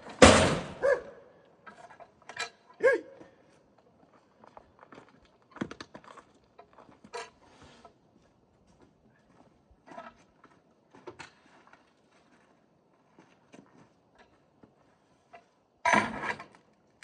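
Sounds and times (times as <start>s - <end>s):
sharp knocks and clatter: 0.0s - 0.8s
loud bang: 0.2s - 0.8s.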